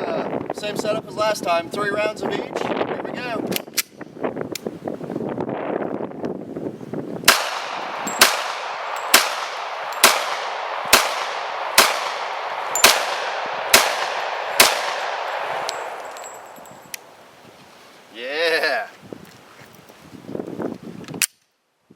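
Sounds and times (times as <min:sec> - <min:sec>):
pistol shots with ringing tail: 0:07.3 - 0:16.8.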